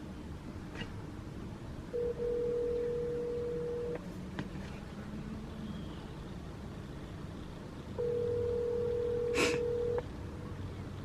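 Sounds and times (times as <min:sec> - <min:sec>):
telephone ringback tone: 0:01.9 - 0:04.0, 0:08.0 - 0:10.0.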